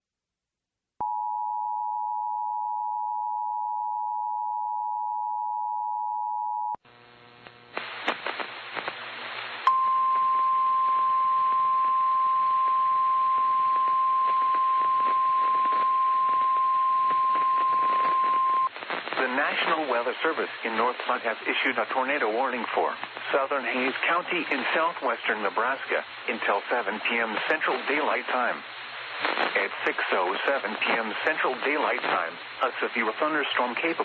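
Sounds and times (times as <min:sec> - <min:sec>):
radio hiss with hum: 0:06.9 - 0:09.7, 0:13.3 - 0:34.0.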